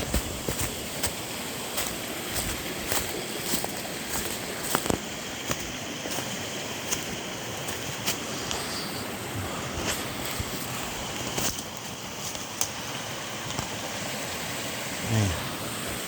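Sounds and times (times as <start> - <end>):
light clicks and crunches: 0.0 - 8.7, 9.8 - 12.7.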